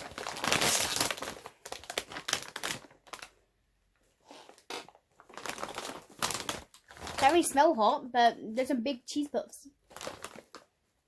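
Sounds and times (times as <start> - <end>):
plastic snack bag crinkling: 0.0 - 3.5, 4.2 - 7.8, 9.8 - 10.8.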